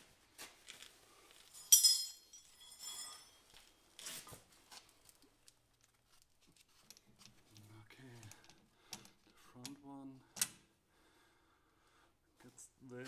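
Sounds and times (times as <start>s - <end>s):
metal clinking on metal: 1.4s - 3.7s.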